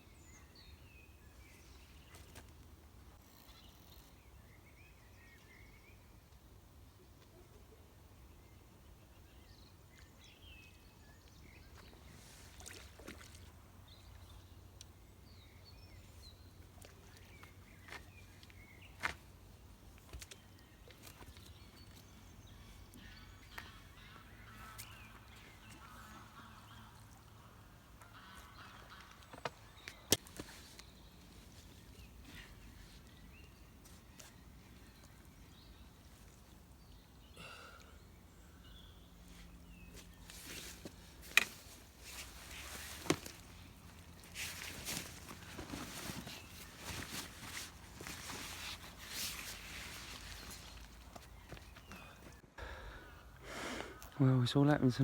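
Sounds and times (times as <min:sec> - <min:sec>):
distant waterfowl calling: 0:22.9 - 0:30.0.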